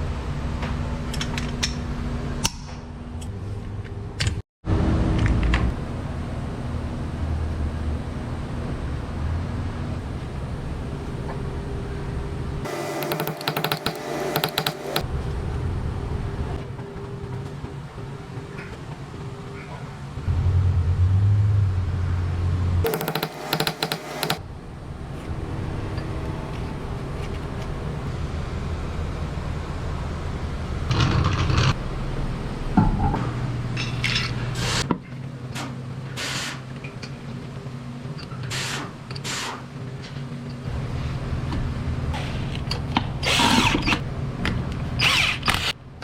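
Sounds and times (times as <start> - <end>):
steady low hum: 11.6 - 34.8.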